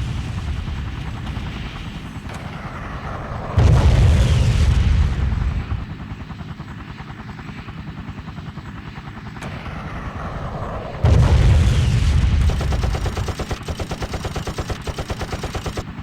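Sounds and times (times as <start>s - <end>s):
helicopter rotor chopping: 0.0s - 16.0s
loud explosion boom: 3.6s - 5.8s, 11.0s - 12.6s.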